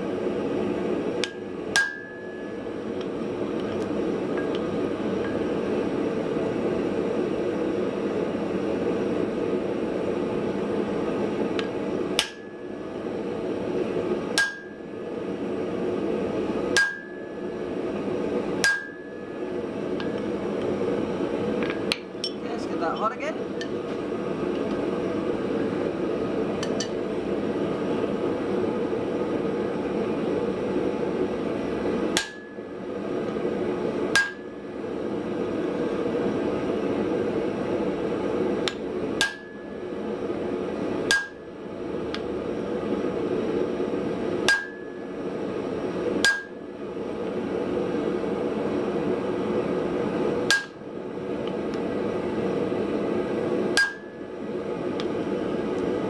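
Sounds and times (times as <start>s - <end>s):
hammer striking hot steel: 1.2s - 5.6s, 11.5s - 12.8s, 14.3s - 14.9s, 16.7s - 17.6s, 18.6s - 19.4s, 21.6s - 22.4s, 26.6s - 27.0s, 32.1s - 32.8s, 34.1s - 34.6s, 38.6s - 39.8s, 41.0s - 41.4s, 44.4s - 45.1s, 46.2s - 46.6s, 50.5s - 50.9s, 53.7s - 54.2s.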